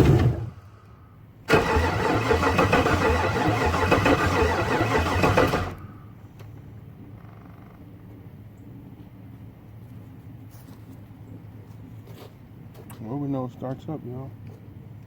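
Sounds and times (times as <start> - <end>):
engine running unevenly: 0.0 - 0.7, 1.5 - 6.0
starter cranking engine: 1.5 - 5.9.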